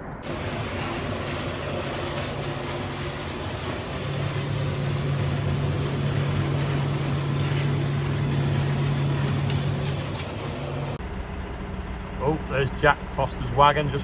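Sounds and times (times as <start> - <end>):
diesel engine droning: 11.0 - 14.0.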